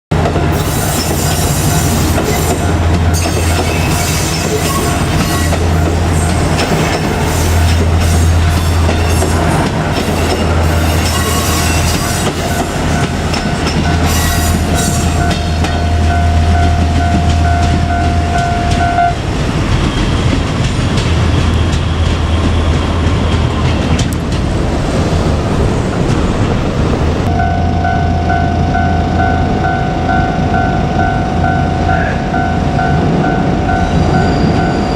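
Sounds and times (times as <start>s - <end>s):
wheels clattering on rails: 0.1s - 31.3s
steady high-pitched tone: 10.0s - 19.2s, 27.3s - 34.9s.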